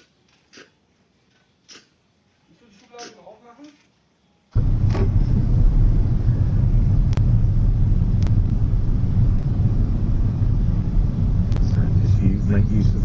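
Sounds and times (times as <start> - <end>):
low rumble: 4.6 - 13.0
faint clicks: 8.2 - 8.6, 11.5 - 11.8.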